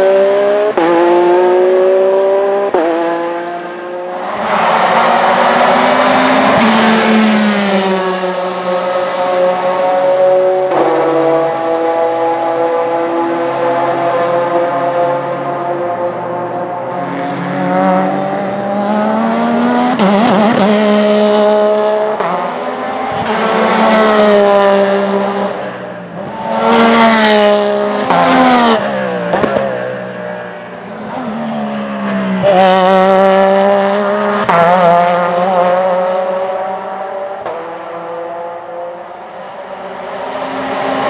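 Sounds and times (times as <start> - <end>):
race car engine at high revs: 0.0 - 41.0.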